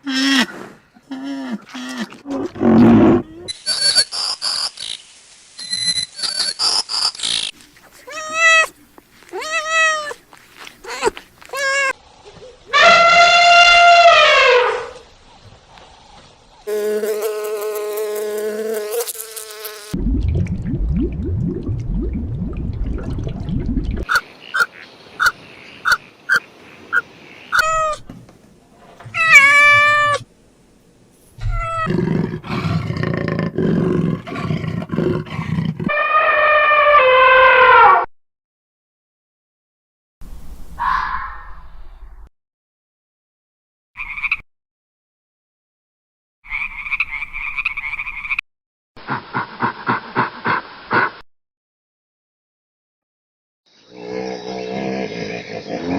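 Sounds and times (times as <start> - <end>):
short arching animal cries: 12.7 - 14.9, 27.5 - 28.1, 29.1 - 30.2, 35.9 - 38.1
long drawn-out animal call: 12.7 - 15.0, 34.2 - 38.1.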